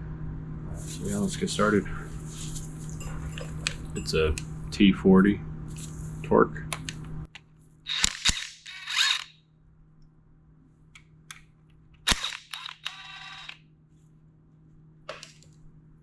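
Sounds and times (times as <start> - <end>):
ratchet wrench clicking: 7.9 - 9.3.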